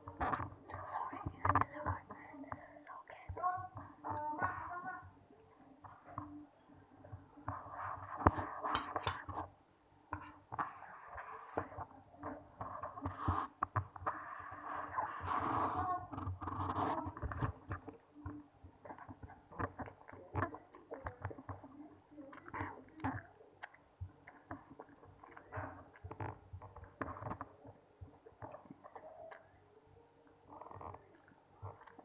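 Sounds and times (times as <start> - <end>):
mouth chewing food: 16.4 - 29.6, 30.2 - 32.0.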